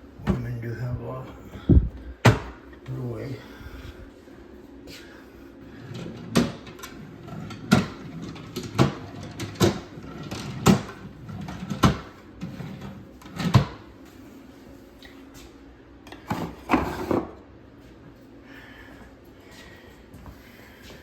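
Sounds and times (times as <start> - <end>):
drawers and cupboard doors shutting: 5.8 - 13.8.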